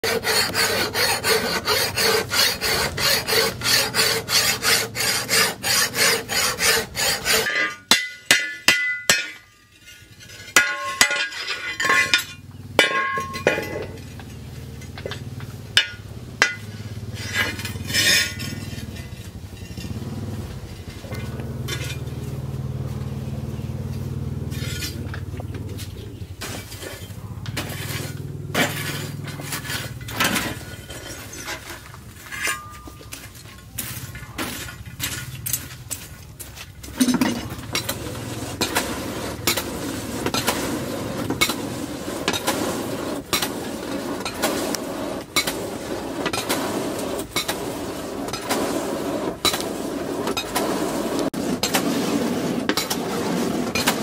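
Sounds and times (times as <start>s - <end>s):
hammer striking steel: 0.0s - 9.6s, 10.5s - 14.1s, 14.8s - 18.7s.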